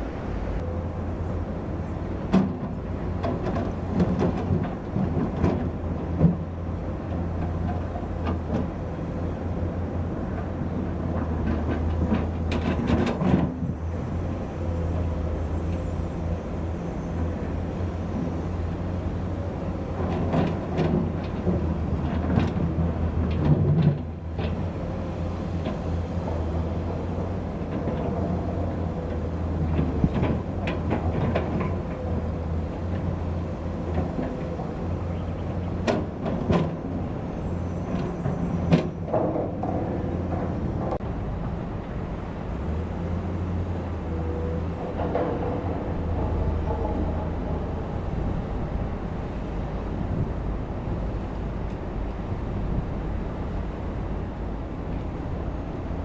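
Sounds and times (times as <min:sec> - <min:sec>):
diesel engine running: 0:00.0 - 0:56.0
metallic clanks and rattles: 0:44.5 - 0:49.2.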